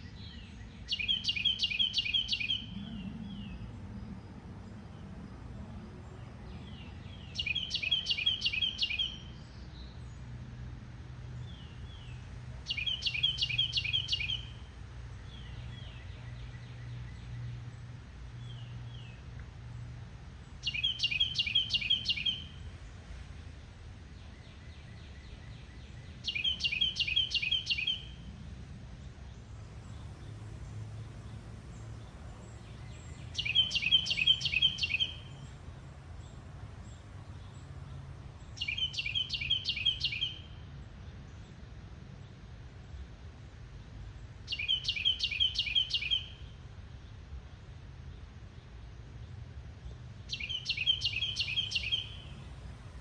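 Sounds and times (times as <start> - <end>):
songbird chirping: 0.0 - 53.0.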